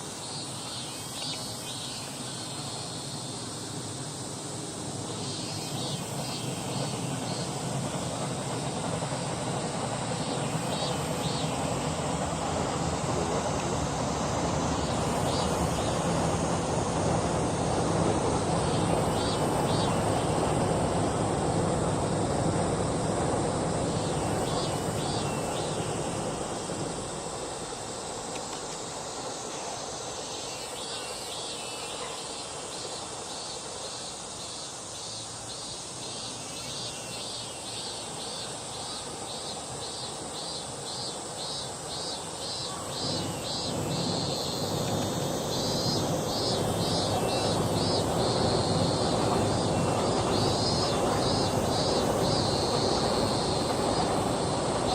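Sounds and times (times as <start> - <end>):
insect chirping: 0.0 - 54.9
distant traffic rumble: 42.0 - 54.9.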